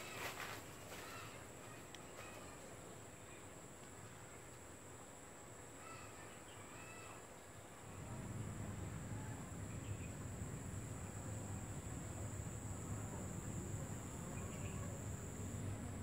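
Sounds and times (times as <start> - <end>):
high-pitched insect buzz: 12.4 - 15.8.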